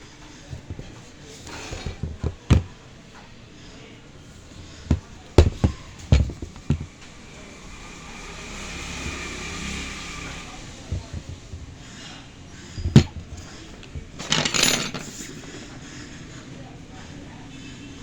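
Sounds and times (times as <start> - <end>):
sharp knocks and clacks: 4.6 - 11.8, 12.8 - 15.2.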